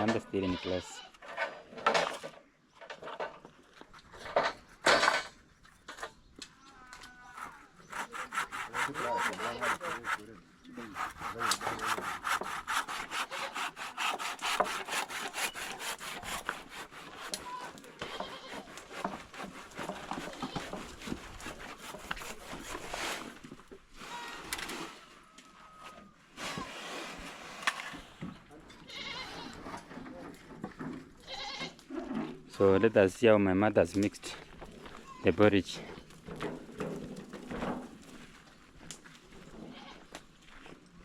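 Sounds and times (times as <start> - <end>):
hand saw cutting: 7.4 - 23.5.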